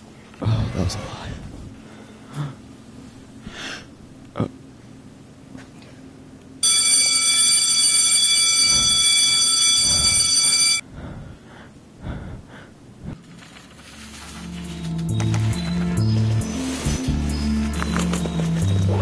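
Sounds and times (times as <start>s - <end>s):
electric bell ringing: 6.6s - 10.8s.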